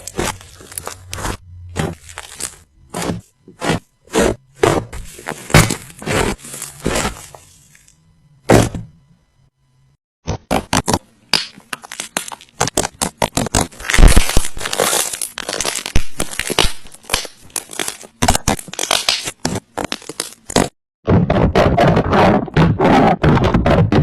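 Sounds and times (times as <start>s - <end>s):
slime crackling and popping: 0.0s - 3.1s, 10.7s - 20.7s.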